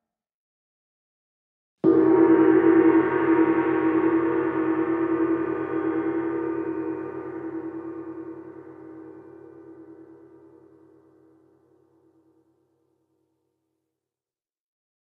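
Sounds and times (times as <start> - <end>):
gong ringing: 1.8 - 10.5.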